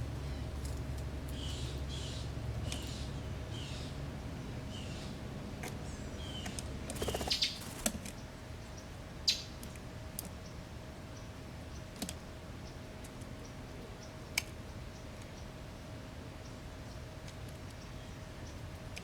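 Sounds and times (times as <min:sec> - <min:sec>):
faint steady hum: 0:00.0 - 0:19.0
bird chirps: 0:06.2 - 0:07.6.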